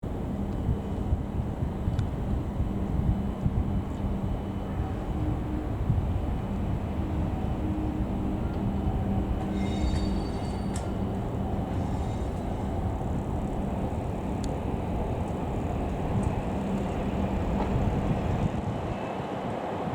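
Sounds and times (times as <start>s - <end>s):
diesel locomotive engine rumble: 0.0s - 19.9s
high-pitched squeals: 7.0s - 13.8s.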